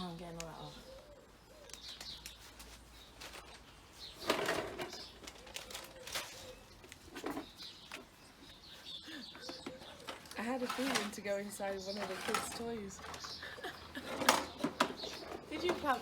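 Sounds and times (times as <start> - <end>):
rustle: 0.0 - 9.0, 9.9 - 13.4
pigeon cooing: 0.6 - 1.9, 4.8 - 7.3, 8.5 - 10.8.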